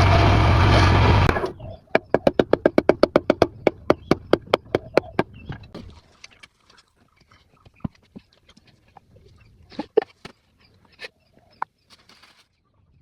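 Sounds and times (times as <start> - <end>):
rapid evenly spaced knocks: 2.0 - 5.3.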